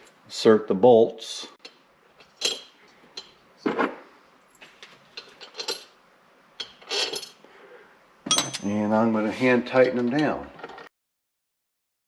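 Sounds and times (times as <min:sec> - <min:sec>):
bolts clinking on metal: 0:08.3 - 0:08.8.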